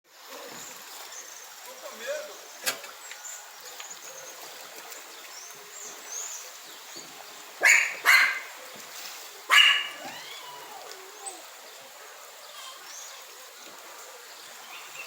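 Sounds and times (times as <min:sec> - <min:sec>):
steady water rush: 0:00.1 - 0:15.0
dog barking: 0:07.6 - 0:08.6, 0:09.5 - 0:10.2.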